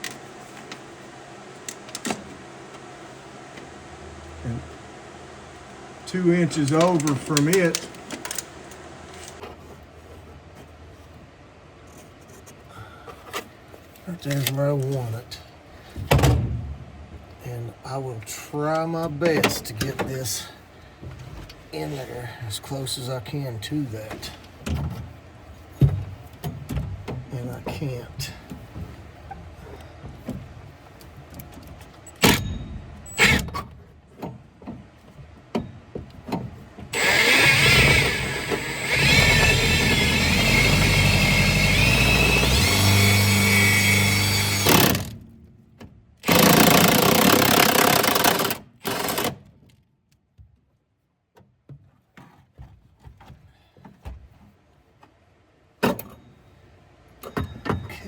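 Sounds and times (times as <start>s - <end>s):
impact driver boring sheet steel: 37.0s - 45.2s, 46.2s - 49.4s.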